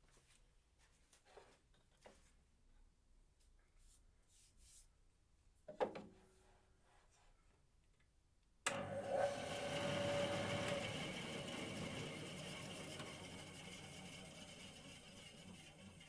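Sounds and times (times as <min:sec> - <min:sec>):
bandsaw running: 0:08.7 - 0:16.0.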